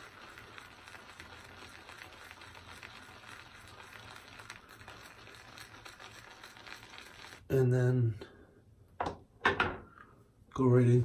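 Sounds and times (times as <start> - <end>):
shaving brush swishing on soap: 0.0 - 7.6.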